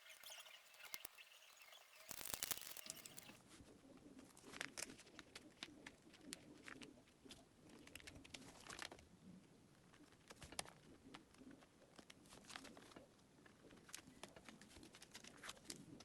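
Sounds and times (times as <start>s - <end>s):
small objects clicking and tapping: 0.0s - 3.4s.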